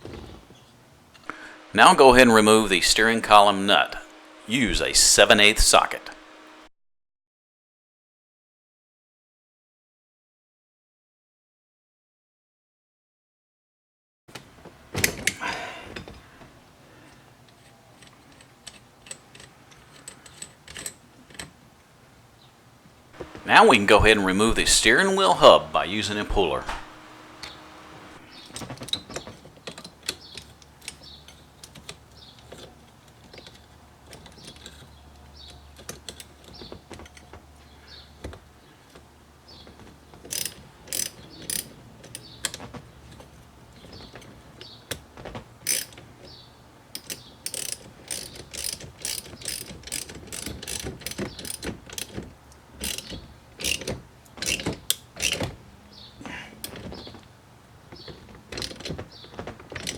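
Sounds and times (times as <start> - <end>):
metallic clicks of hand tools: 40.2 - 43.3, 45.6 - 46.0, 46.9 - 52.2, 52.8 - 55.5
quick ratcheting clicks: 40.3 - 42.3, 45.6 - 46.0, 46.9 - 52.2, 52.8 - 55.5.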